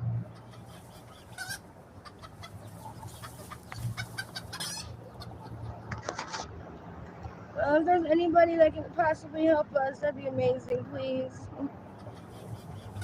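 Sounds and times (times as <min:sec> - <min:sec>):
chickens clucking: 0:00.0 - 0:06.6, 0:11.5 - 0:13.0.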